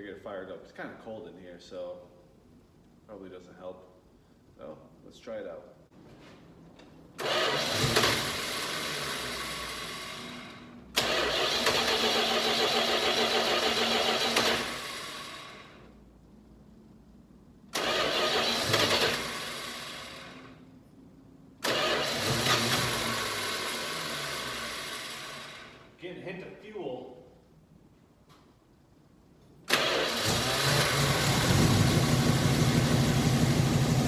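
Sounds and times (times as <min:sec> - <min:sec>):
starter cranking engine: 0:07.2 - 0:15.8, 0:17.7 - 0:20.5, 0:21.6 - 0:25.9, 0:29.7 - 0:34.0.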